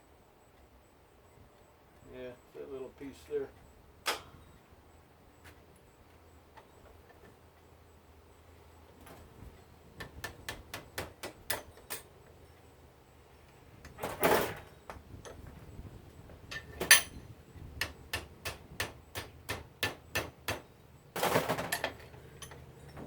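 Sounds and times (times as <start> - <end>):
metal tool clicks and taps: 10.0 - 12.1.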